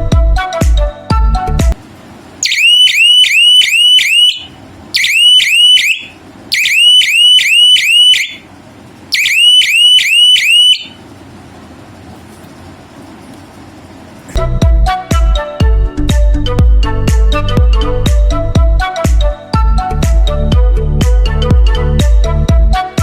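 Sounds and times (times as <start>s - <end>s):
electronic alarm rising chirps: 2.4s - 8.4s, 9.2s - 11.0s.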